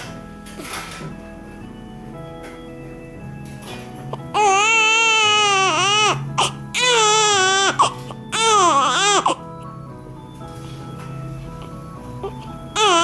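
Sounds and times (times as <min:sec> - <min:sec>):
background music: 0:00.0 - 0:13.0
baby crying: 0:04.3 - 0:09.5, 0:12.2 - 0:13.0.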